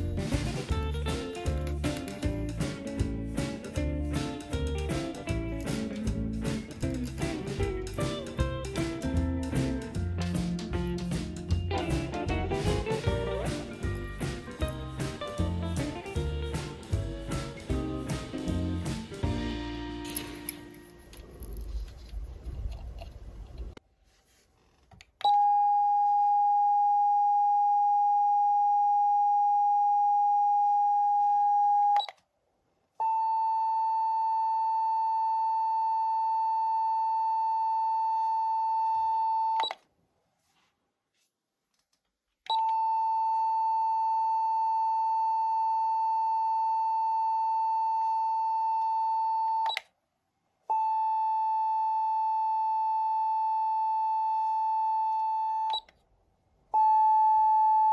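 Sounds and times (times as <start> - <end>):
steady electronic siren beep: 25.4 - 32.1, 33.0 - 39.6, 42.8 - 49.7, 50.7 - 55.9, 56.8 - 57.9.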